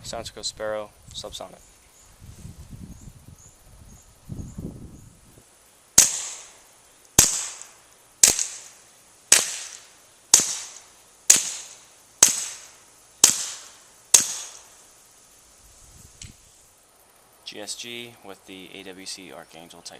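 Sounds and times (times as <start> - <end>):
suppressed pistol shots: 6.0 - 6.6, 7.2 - 14.7.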